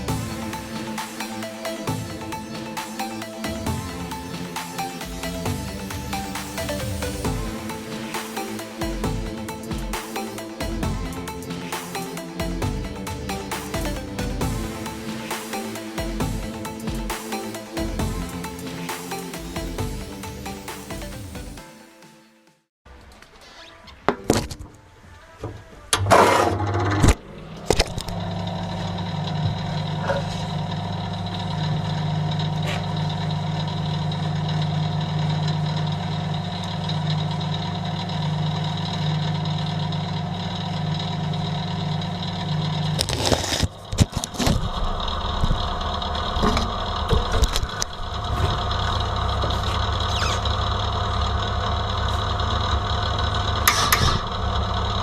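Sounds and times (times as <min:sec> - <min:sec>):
machine humming: 0:25.9 - 0:55.0.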